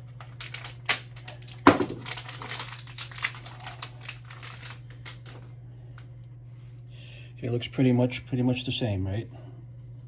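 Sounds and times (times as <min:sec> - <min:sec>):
packaging crinkling and rustling: 0:00.0 - 0:05.5
packaging snapping: 0:00.2 - 0:05.4.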